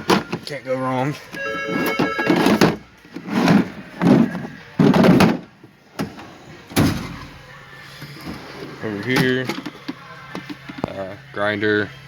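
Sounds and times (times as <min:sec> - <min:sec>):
tools clunking inside drawer: 0:00.0 - 0:00.5, 0:01.3 - 0:07.2
metal drawers sliding and shutting: 0:01.7 - 0:07.4, 0:08.0 - 0:10.5.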